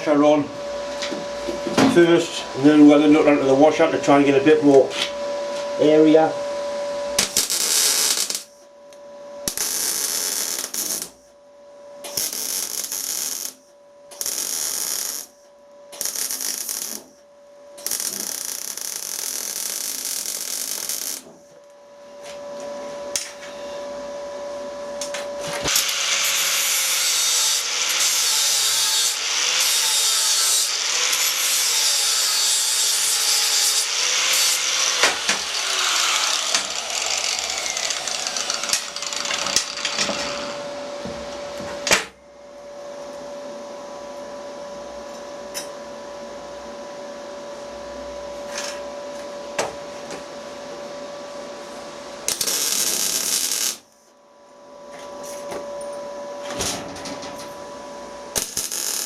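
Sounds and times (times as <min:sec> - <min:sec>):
welder arcing: 0:07.2 - 0:08.6, 0:09.4 - 0:11.3, 0:12.0 - 0:17.2, 0:17.8 - 0:21.5, 0:25.0 - 0:40.6, 0:52.3 - 0:54.0, 0:58.3 - 0:59.0
power tool running: 0:25.6 - 0:40.9.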